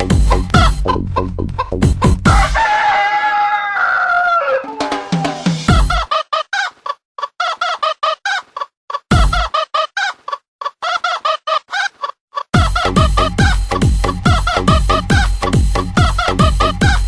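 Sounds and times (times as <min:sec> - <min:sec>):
music with clucking notes: 0:00.0 - 0:03.5, 0:04.2 - 0:06.2, 0:09.1 - 0:09.6, 0:12.5 - 0:17.0.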